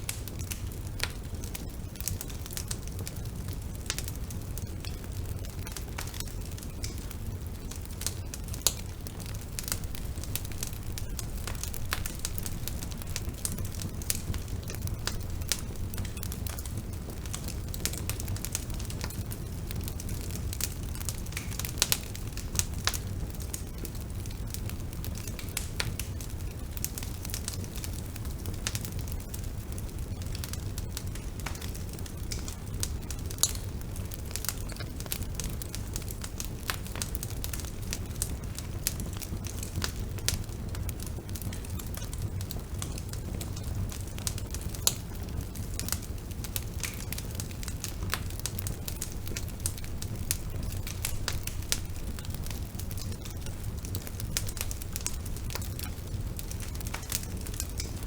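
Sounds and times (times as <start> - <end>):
bonfire flames rumbling: 0.0 - 58.0
wood crackling and popping: 0.0 - 58.0.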